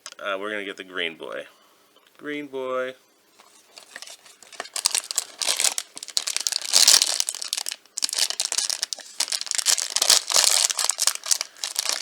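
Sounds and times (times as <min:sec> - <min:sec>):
wrapper crinkling as torn open: 0:03.8 - 0:12.0.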